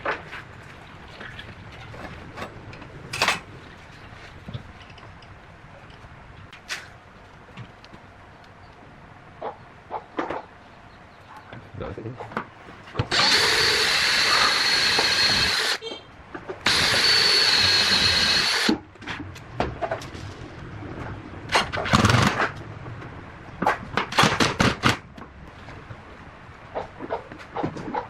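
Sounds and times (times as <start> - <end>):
power tool motor running: 13.1 - 15.8, 16.7 - 18.8.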